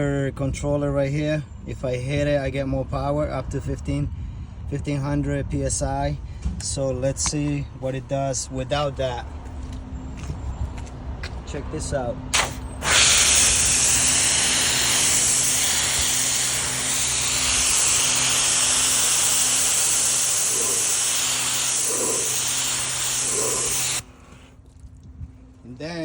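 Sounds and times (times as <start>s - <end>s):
pressure washer water jet hissing: 12.4s - 24.5s.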